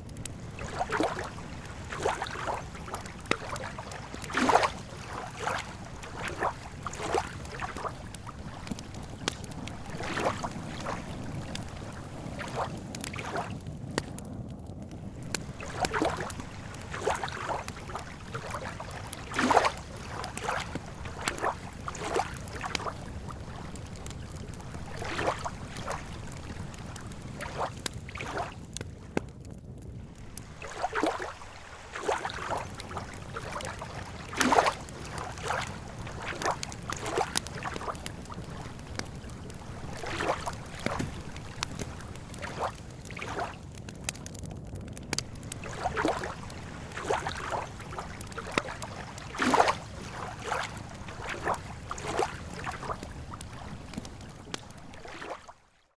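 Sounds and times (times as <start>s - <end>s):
water lapping at shore: 0.0s - 14.2s, 14.9s - 29.3s, 30.0s - 44.4s, 45.0s - 56.0s.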